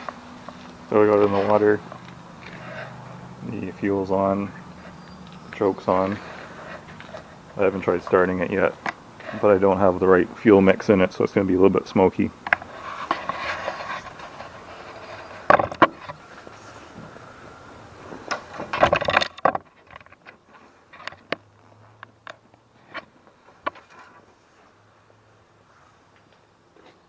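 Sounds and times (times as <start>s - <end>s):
faint clicks: 4.5s - 9.4s
outboard pull-start rattling: 12.4s - 16.9s, 18.0s - 21.4s.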